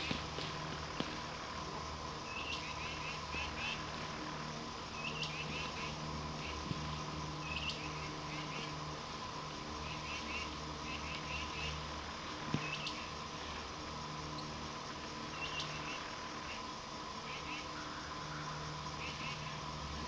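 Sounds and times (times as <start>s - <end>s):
insect drone: 0.0s - 20.0s
bird chirping calls: 5.0s - 6.6s, 7.4s - 8.8s.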